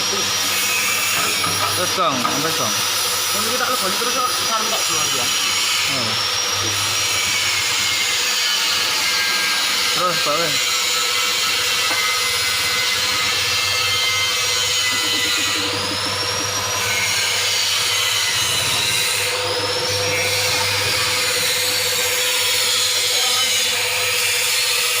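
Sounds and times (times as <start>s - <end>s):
loud grinding and scraping: 0.0s - 25.0s
machine motor hum: 10.6s - 24.0s
high whine: 11.5s - 22.1s.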